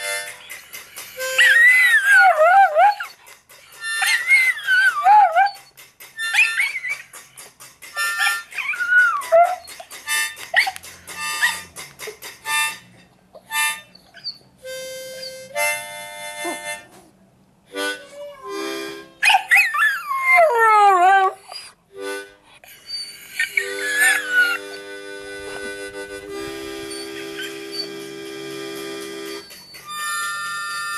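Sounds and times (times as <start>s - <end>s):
harmonica-like music: 0.0s - 17.0s, 17.7s - 21.0s, 21.9s - 30.9s
dog howling and whining: 1.2s - 3.2s, 3.9s - 7.0s, 8.1s - 9.8s, 17.8s - 21.8s, 22.8s - 24.9s, 26.8s - 28.0s
dog yelping: 1.2s - 3.2s, 3.9s - 7.2s, 8.0s - 9.9s, 10.5s - 11.7s, 13.4s - 14.4s, 17.8s - 21.8s, 22.8s - 25.0s, 26.8s - 28.0s.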